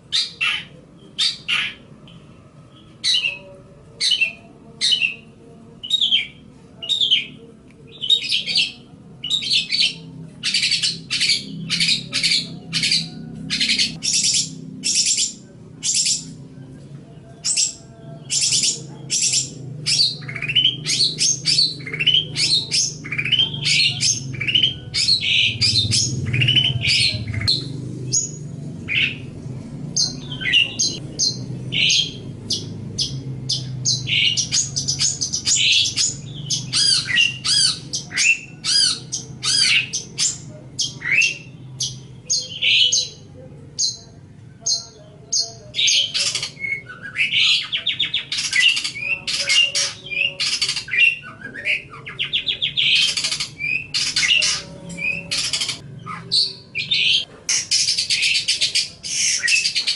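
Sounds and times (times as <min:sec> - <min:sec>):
bird singing chirps and trills: 0:00.0 - 0:59.9
harsh rasping bird notes: 0:17.4 - 0:44.0.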